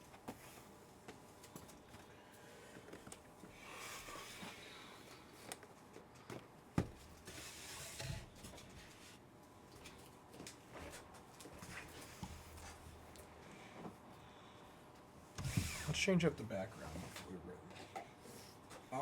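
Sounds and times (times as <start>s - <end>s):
knocks on cardboard boxes: 6.7s - 7.0s.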